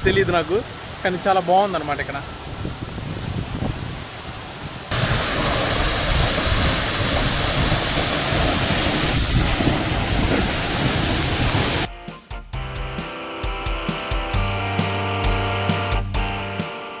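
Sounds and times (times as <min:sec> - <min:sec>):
waterfall roaring: 0:00.0 - 0:11.9.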